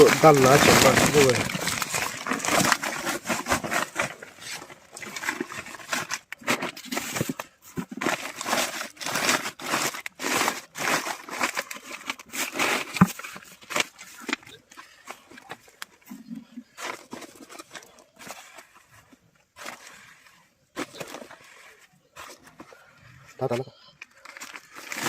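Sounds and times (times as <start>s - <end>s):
pigs chomping and slurping feed: 0.0s - 3.2s.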